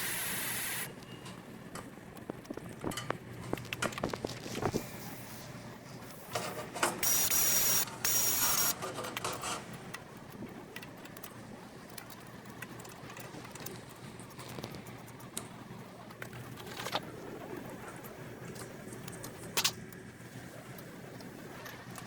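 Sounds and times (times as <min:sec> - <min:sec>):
loud hissing with high whine: 0:00.0 - 0:00.9, 0:07.0 - 0:08.7
light clicks and clatter: 0:01.0 - 0:04.9, 0:08.8 - 0:20.1.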